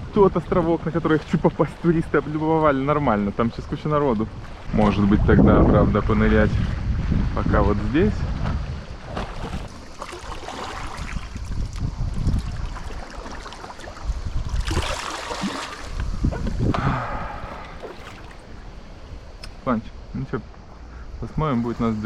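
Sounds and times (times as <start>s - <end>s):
sea water splashing and lapping: 0.0s - 19.7s
wind rumble on microphone: 0.0s - 22.0s
paddle dipping in water: 0.4s - 4.8s, 8.2s - 19.6s.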